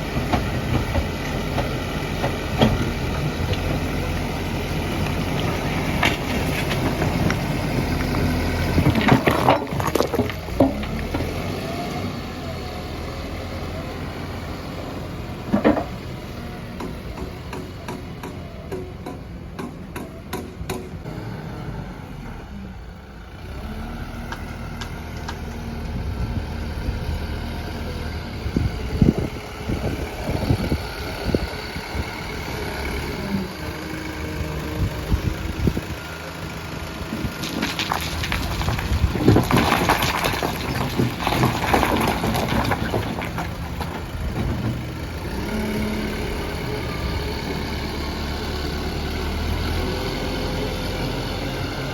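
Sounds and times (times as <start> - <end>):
diesel engine running: 0.0 - 51.9.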